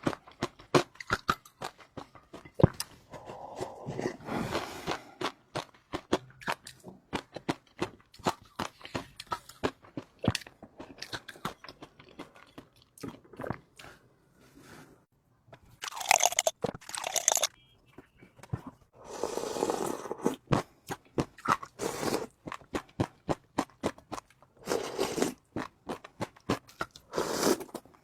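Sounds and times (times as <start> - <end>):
person chewing food: 0.0 - 14.1, 15.8 - 28.0.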